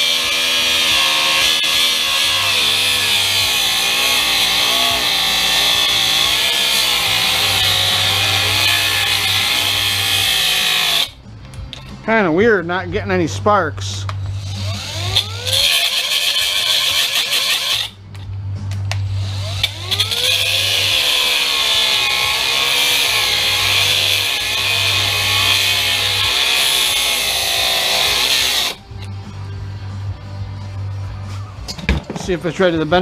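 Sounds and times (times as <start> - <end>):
angle grinder cutting metal: 0.0 - 11.2, 13.9 - 18.0, 19.0 - 29.1.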